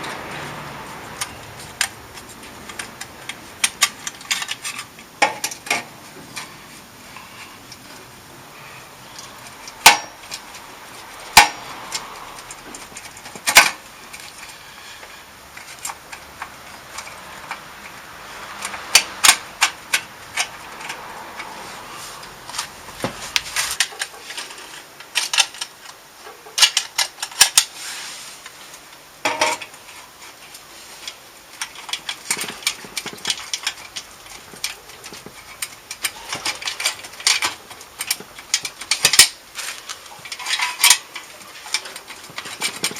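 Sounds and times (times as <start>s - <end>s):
tools and metal parts clinking: 1.2s - 6.5s, 29.2s - 42.9s.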